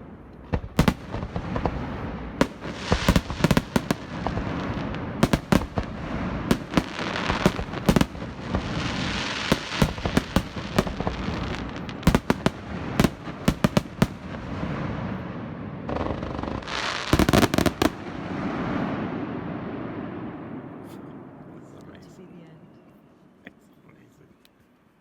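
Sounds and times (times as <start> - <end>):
fireworks bangs and cracks: 0.0 - 21.0.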